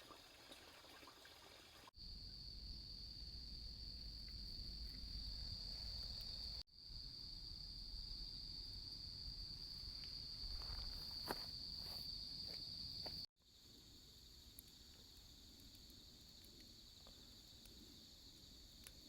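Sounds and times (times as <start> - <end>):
night insects chirring: 2.0 - 19.0.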